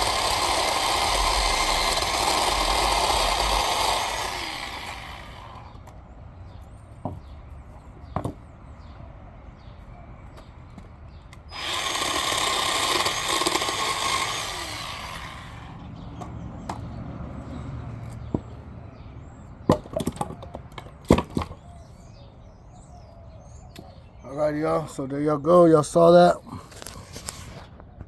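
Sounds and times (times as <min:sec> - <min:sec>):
electric chainsaw cutting log: 0:00.0 - 0:05.8, 0:11.5 - 0:15.9.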